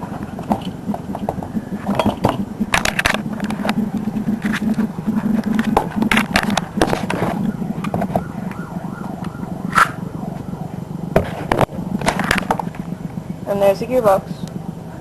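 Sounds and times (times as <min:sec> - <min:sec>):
low hum: 0:00.0 - 0:15.0
plastic parts clicking and scraping: 0:00.1 - 0:08.6.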